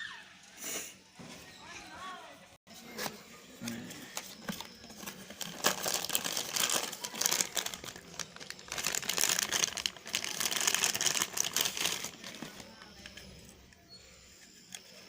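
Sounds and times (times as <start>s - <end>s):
packaging crinkling and rustling: 4.1s - 13.6s.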